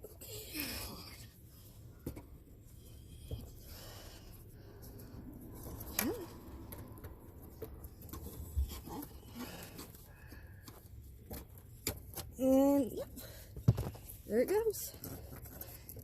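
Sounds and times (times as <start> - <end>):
hands clicking and scraping cable: 4.8 - 16.0.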